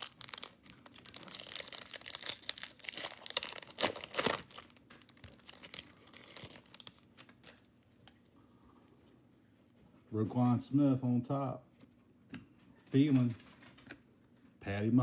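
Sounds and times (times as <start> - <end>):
card pack wrapper tearing: 0.0 - 7.6
wrapper crinkling: 0.0 - 7.7.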